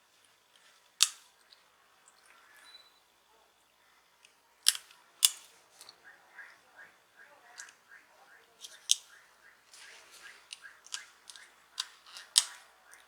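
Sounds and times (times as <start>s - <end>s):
plastic phone parts handled: 4.6s - 6.0s, 8.6s - 13.0s
sharp clicks: 7.5s - 7.9s, 8.6s - 13.0s.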